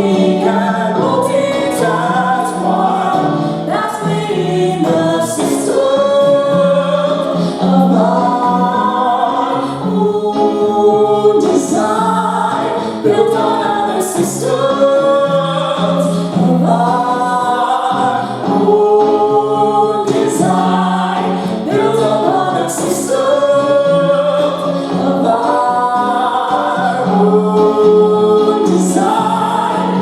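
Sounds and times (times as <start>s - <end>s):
voices singing: 0.0s - 30.0s.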